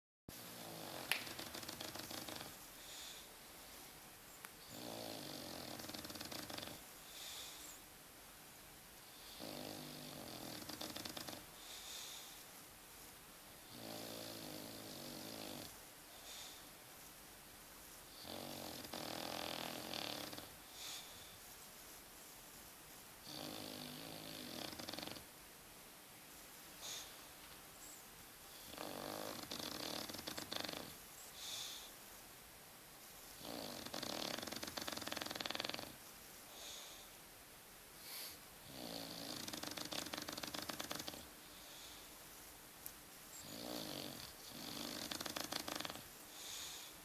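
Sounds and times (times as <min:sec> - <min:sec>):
soft hissing breath: 0:00.3 - 0:47.0
person snoring: 0:00.4 - 0:03.2, 0:04.7 - 0:06.8, 0:09.2 - 0:11.4, 0:18.2 - 0:20.5, 0:23.3 - 0:25.2, 0:28.6 - 0:31.0, 0:33.4 - 0:36.0, 0:38.1 - 0:41.3, 0:43.4 - 0:46.0.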